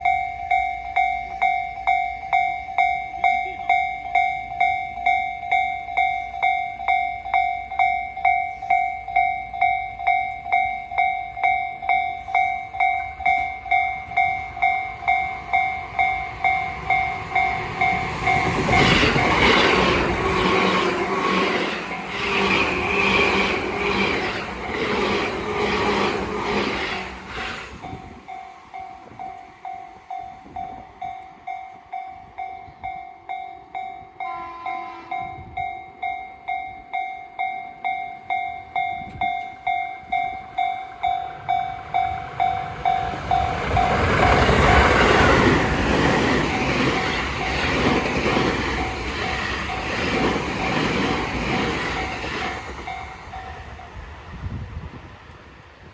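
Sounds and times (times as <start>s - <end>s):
level-crossing bell dinging: 0.0s - 54.0s
train wheels clattering: 12.8s - 31.4s, 39.1s - 53.7s.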